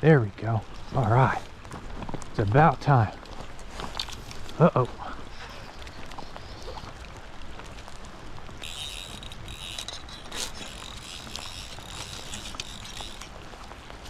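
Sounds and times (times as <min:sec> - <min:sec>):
fly reel drag buzzing: 0:08.6 - 0:13.6.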